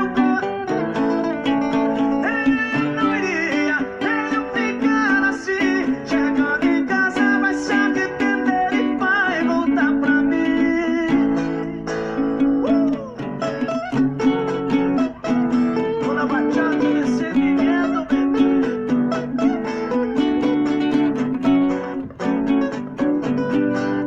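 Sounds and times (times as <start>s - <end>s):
acoustic guitar chords: 0.0s - 24.0s
sliding melodic lead line: 0.0s - 24.0s.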